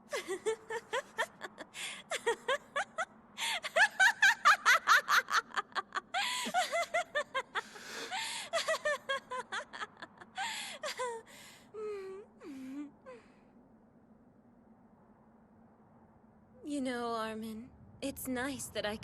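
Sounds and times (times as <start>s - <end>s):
young woman laughing: 0.1s - 11.3s.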